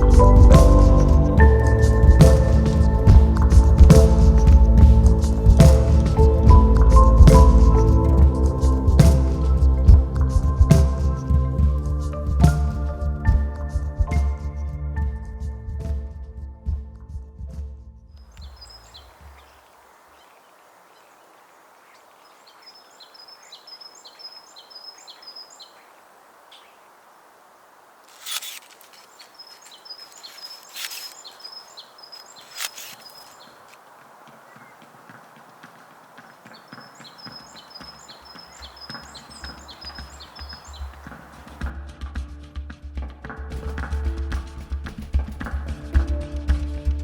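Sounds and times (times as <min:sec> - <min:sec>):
songbird singing: 0:00.0 - 0:14.2, 0:18.2 - 0:41.7.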